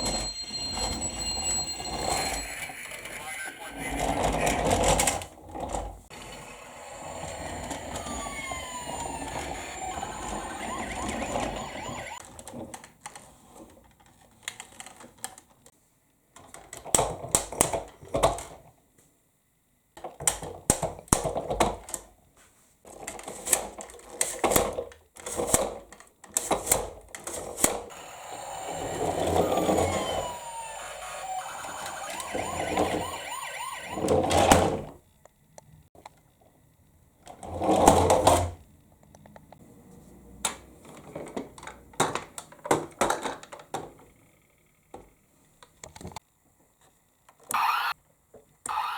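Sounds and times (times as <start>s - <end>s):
toy electronic siren wailing: 0.0s - 4.7s, 6.6s - 12.2s, 27.9s - 34.7s, 47.5s - 48.0s, 48.7s - 48.9s.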